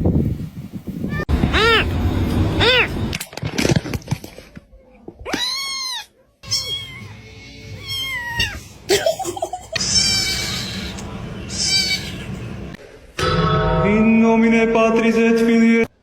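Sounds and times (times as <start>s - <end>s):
cats meowing: 1.1s - 1.9s, 5.2s - 8.8s, 9.8s - 12.4s.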